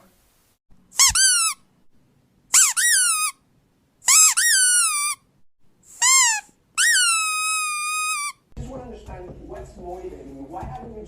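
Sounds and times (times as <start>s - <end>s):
squeaky dog toy squeaking: 1.0s - 1.7s, 2.5s - 3.4s, 4.0s - 5.3s, 5.9s - 8.5s.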